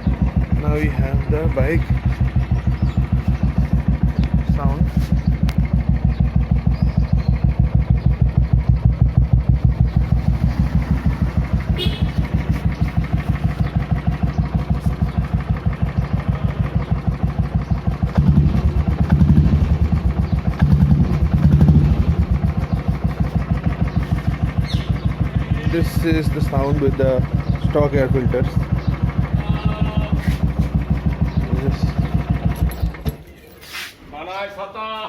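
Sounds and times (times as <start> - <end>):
motorcycle engine idling: 0.0 - 33.4.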